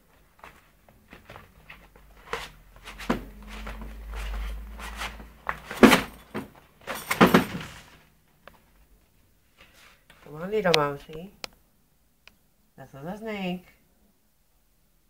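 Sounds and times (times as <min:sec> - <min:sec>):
handling knocks and clicks: 0:00.4 - 0:08.7
low rumble: 0:02.9 - 0:06.3.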